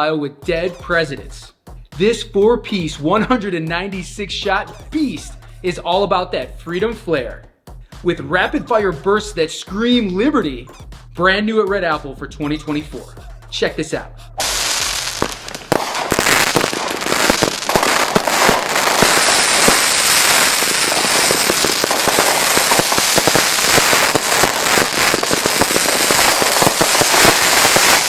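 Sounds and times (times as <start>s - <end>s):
fireworks barrage with crackle: 14.4s - 28.0s.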